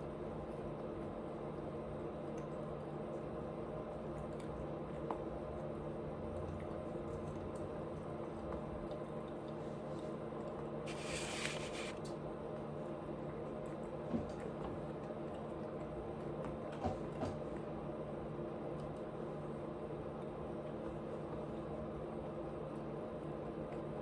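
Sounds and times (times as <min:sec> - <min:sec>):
wet chewing and mouth sounds: 0:00.6 - 0:12.0
hissing rustle: 0:10.9 - 0:12.0.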